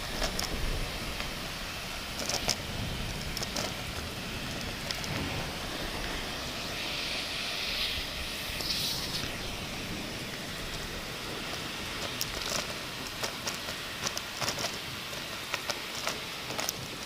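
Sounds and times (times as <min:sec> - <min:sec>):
low rumble: 0:00.0 - 0:14.0
heavy rain falling: 0:00.0 - 0:17.0
sharp crackles: 0:00.0 - 0:17.0.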